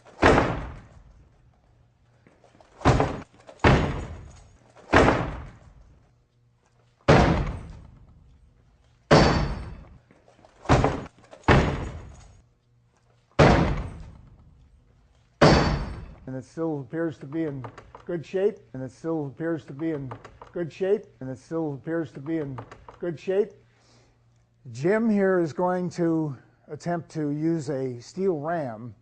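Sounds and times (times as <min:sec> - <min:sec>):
door being struck hard: 0:00.0 - 0:00.9, 0:02.8 - 0:05.7, 0:07.1 - 0:08.0, 0:09.1 - 0:10.0, 0:10.6 - 0:12.2, 0:13.4 - 0:14.3, 0:15.4 - 0:16.2.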